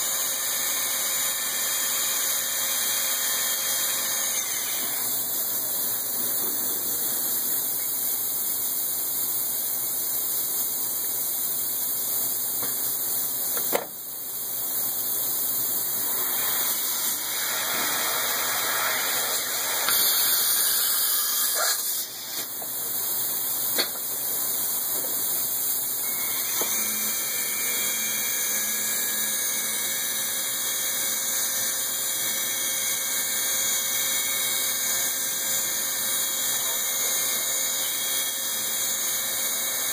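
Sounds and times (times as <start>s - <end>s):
machine tool machining metal: 16.0s - 22.7s, 25.9s - 39.9s.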